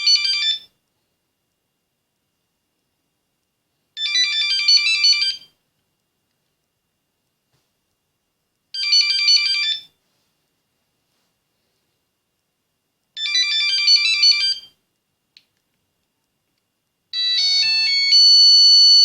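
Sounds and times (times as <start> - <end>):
mobile phone ringtone beeps: 0.0 - 0.7, 4.0 - 5.5, 8.8 - 9.9, 13.2 - 14.7, 17.2 - 19.0.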